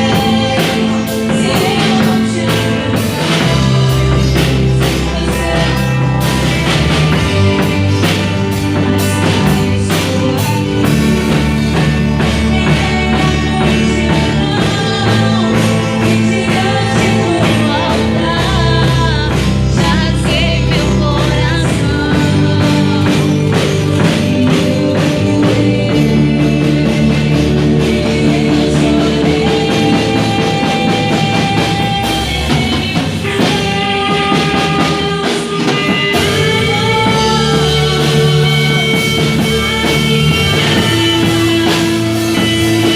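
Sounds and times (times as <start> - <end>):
drum kit: 0.0 - 42.9
electric guitar: 0.0 - 42.9
person singing: 0.0 - 42.9.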